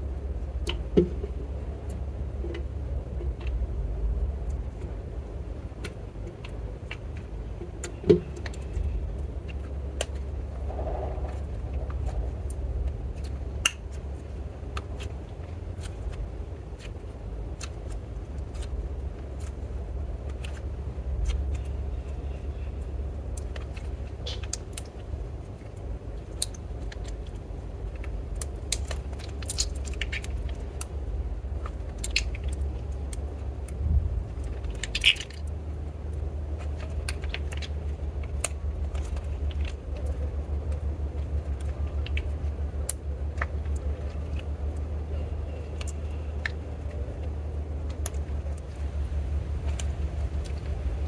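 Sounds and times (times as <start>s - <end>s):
clicks and crackling pops: 5.8s - 21.8s, 23.2s - 51.0s
low hum: 8.2s - 24.2s, 29.8s - 51.0s.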